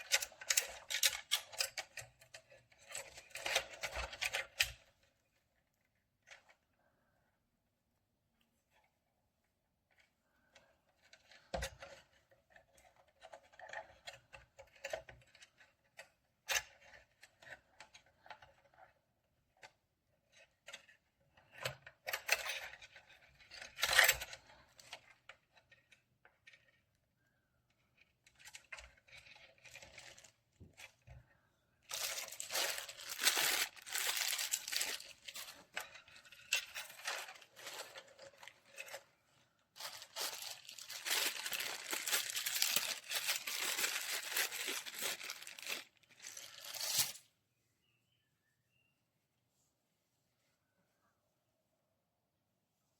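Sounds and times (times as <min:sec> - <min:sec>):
packaging crinkling and tearing: 0:31.9 - 0:39.0, 0:39.8 - 0:47.2.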